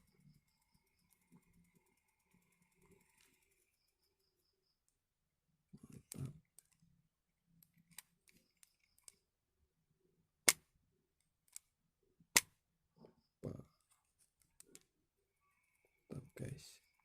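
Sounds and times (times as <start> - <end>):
fishing reel clicks and ticks: 0.0 - 4.0.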